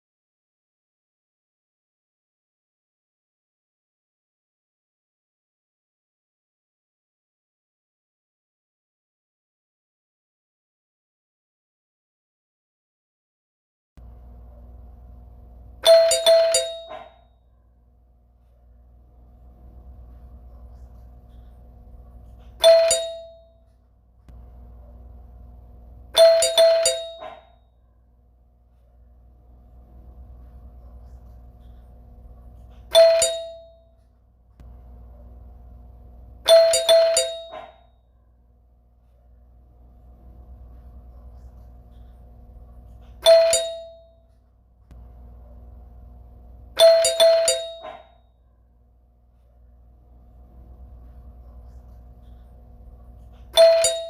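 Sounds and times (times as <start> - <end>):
faint steady hum: 14.0 - 54.0
doorbell ringing: 15.8 - 17.2, 22.6 - 23.7, 26.1 - 27.6, 32.9 - 34.0, 36.4 - 37.8, 43.2 - 44.3, 46.8 - 48.2, 53.6 - 54.0.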